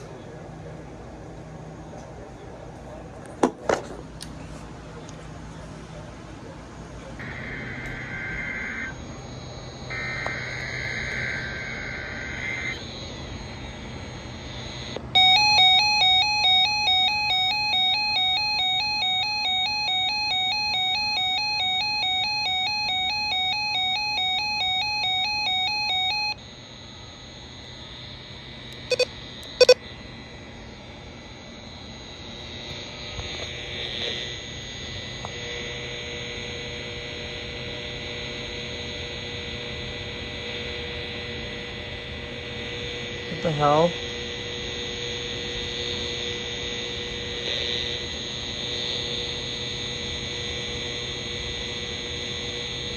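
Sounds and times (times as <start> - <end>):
two-tone emergency alert: 7.2 - 26.5, 28.7 - 29.8
faint steady tone: 7.2 - 52.9.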